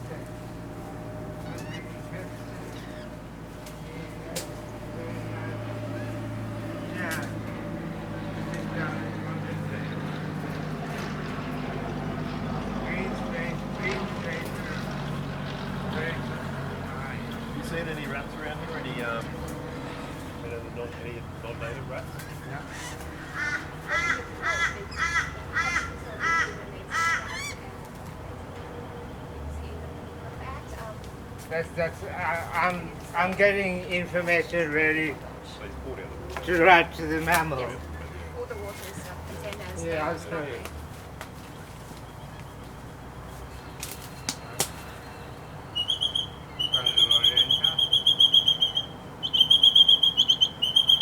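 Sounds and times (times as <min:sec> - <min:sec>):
bird short calls: 0:01.4 - 0:03.2, 0:43.6 - 0:51.0.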